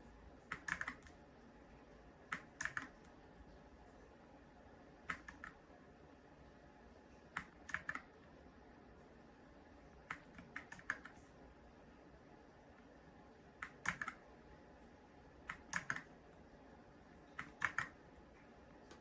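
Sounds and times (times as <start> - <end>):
mechanical keyboard typing: 0.5 - 1.2, 2.3 - 3.1, 5.0 - 5.6, 7.3 - 8.2, 10.0 - 11.2, 13.5 - 14.3, 15.4 - 16.3, 17.3 - 18.0, 18.8 - 19.0.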